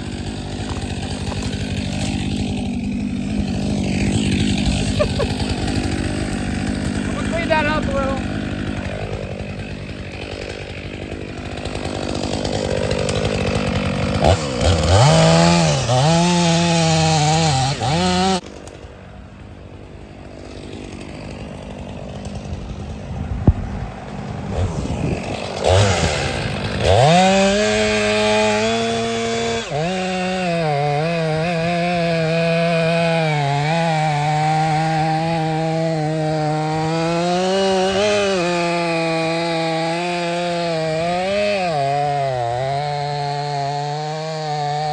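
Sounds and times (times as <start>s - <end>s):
chainsaw revving and cutting: 0.0s - 44.9s.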